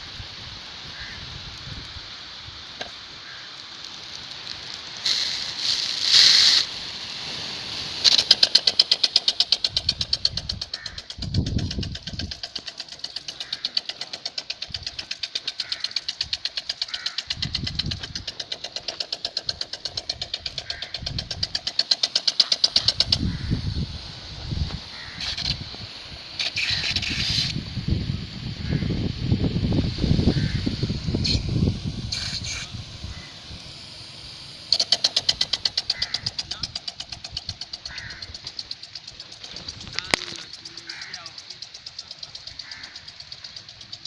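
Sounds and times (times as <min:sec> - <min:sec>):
water spray hiss: 0:00.0 - 0:44.0
sprinkler mechanical ticks: 0:00.1 - 0:44.0.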